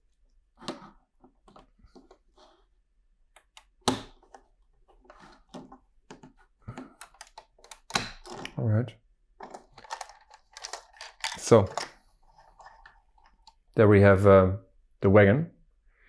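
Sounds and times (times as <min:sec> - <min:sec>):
plastic pieces clicking together: 0:06.1 - 0:08.6, 0:09.4 - 0:12.0.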